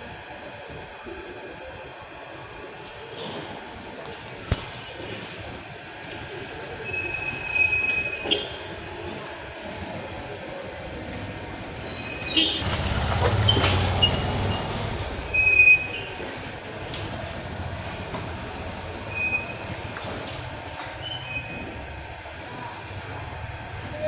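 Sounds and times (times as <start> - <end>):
heavy machinery rumbling: 3.2 - 24.0
high-pitched metallic squeals: 6.8 - 8.7, 11.8 - 16.4, 19.1 - 19.7.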